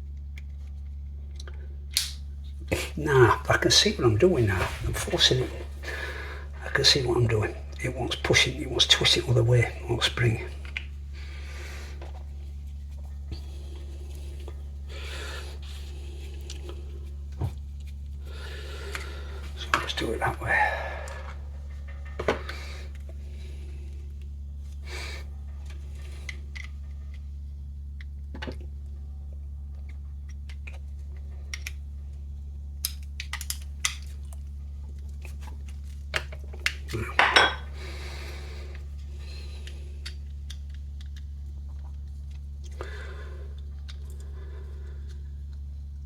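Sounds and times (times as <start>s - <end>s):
steady low hum: 0.0s - 46.0s.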